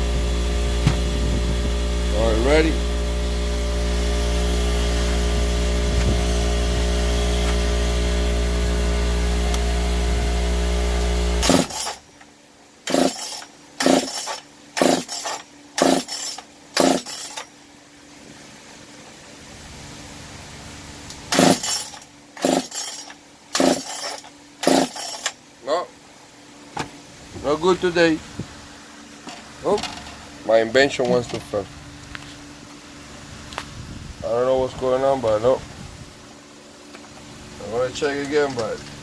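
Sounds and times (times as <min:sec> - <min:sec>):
concrete saw engine running: 0:00.0 - 0:12.0, 0:12.8 - 0:17.5, 0:21.3 - 0:25.4
recoil starter cord pulls: 0:11.4 - 0:12.0, 0:12.9 - 0:17.5, 0:21.3 - 0:25.4.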